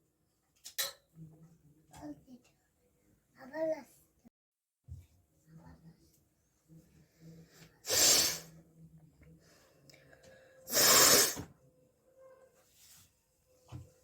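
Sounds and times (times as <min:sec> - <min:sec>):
person forcing out hissing breaths: 0:07.9 - 0:08.5, 0:10.7 - 0:11.4.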